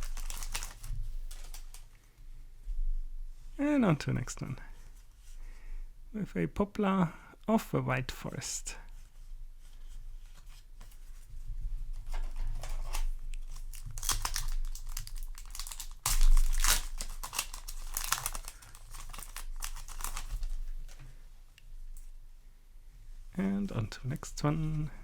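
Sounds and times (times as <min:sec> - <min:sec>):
foil wrapper crinkling and tearing: 0:00.0 - 0:01.8, 0:12.4 - 0:21.0.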